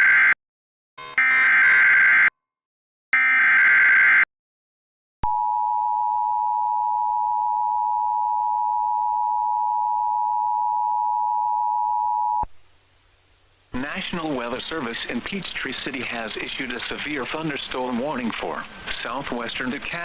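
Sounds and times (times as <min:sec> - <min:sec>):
steady dual tone alert signal: 0:01.0 - 0:02.0.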